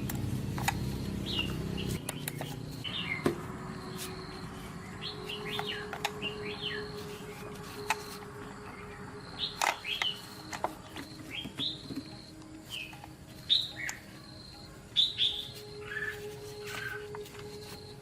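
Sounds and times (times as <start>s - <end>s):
small birds chirping: 0.6s - 18.0s.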